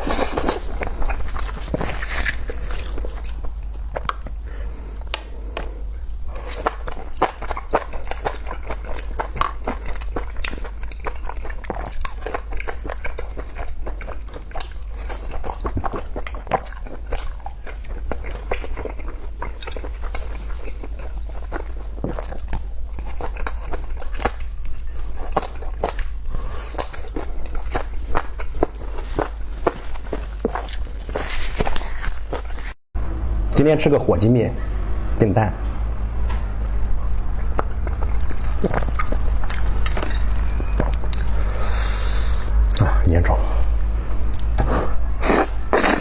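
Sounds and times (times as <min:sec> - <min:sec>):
person chewing crunchy food: 0:00.0 - 0:32.8, 0:36.6 - 0:43.0, 0:43.6 - 0:46.0
steady low hum: 0:00.0 - 0:46.0.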